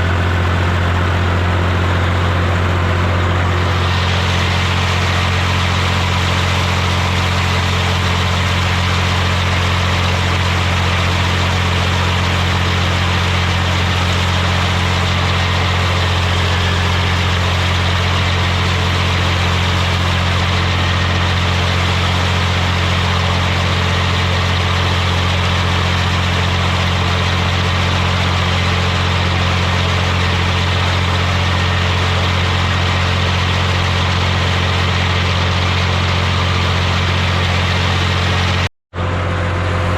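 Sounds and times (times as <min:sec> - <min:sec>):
tractor engine running: 0:00.0 - 0:39.9.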